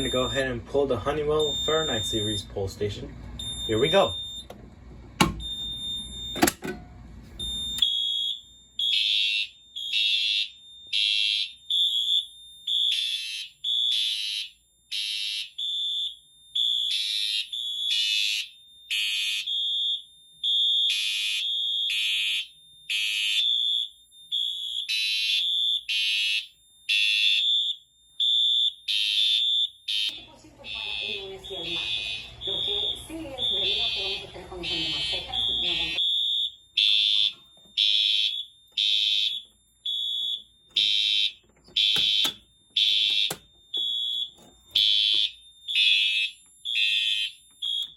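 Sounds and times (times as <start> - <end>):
fire alarm horn blasts: 0.0 - 4.6, 7.4 - 47.9
pull station clicks: 5.2 - 5.5, 6.3 - 6.9, 40.7 - 44.5.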